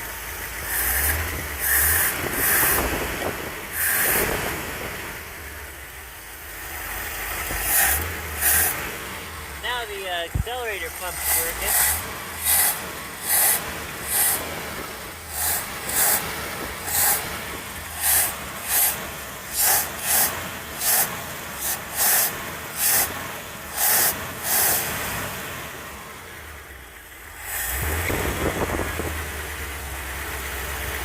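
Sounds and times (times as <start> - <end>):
truck engine starting and running: 0.0 - 31.0
short hissing spurts: 15.3 - 17.3.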